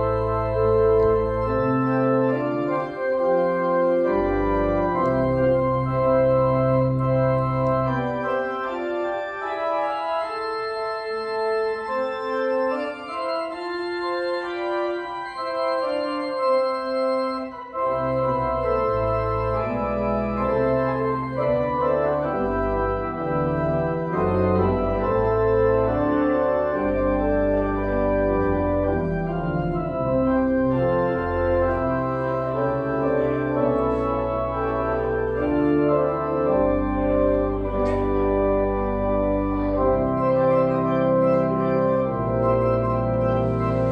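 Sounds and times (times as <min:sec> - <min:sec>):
church organ chords: 0:00.0 - 0:43.9.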